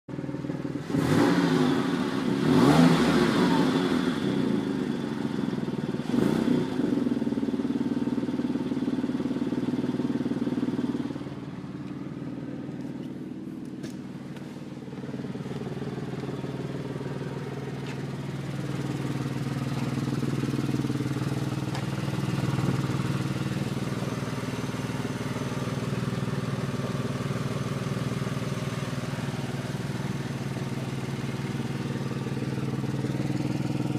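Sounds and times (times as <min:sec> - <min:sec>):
car engine running and revving: 0:00.1 - 0:33.9
strange engine noise: 0:00.1 - 0:33.9.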